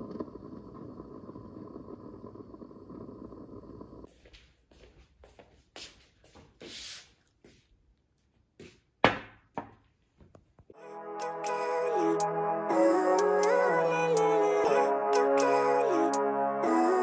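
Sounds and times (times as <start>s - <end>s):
soft music: 10.8s - 17.0s.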